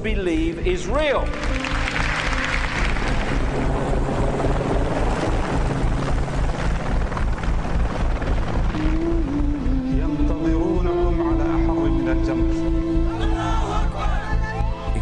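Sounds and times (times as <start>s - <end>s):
throbbing low pulse music: 0.0s - 15.0s
droning tones: 1.2s - 15.0s
high sustained tone: 8.2s - 13.2s.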